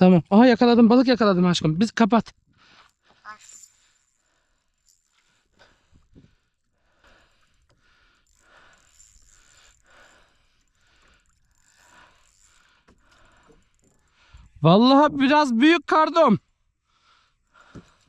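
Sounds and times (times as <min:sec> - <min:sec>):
faint clicks: 0:02.8 - 0:14.4.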